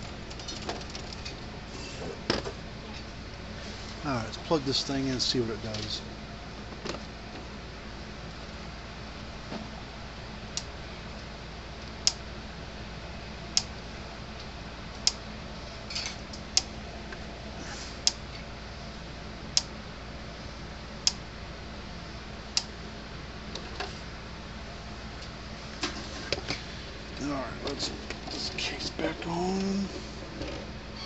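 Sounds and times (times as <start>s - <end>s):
electric fence energizer clicking: 10.5s - 12.3s, 13.5s - 13.8s, 14.4s - 15.3s, 18.0s - 18.4s, 19.5s - 19.8s, 21.0s - 21.2s, 22.5s - 22.8s.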